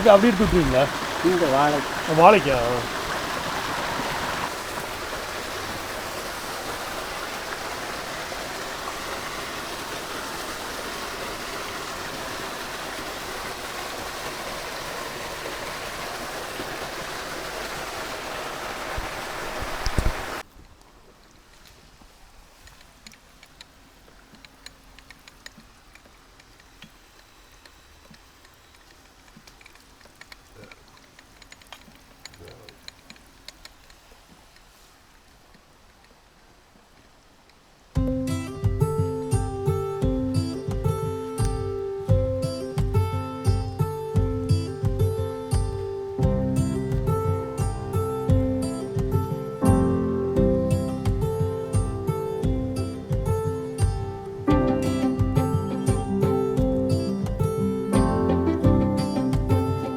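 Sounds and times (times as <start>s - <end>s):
water rushing: 0.0s - 59.9s
faint scattered ticks: 19.6s - 49.8s.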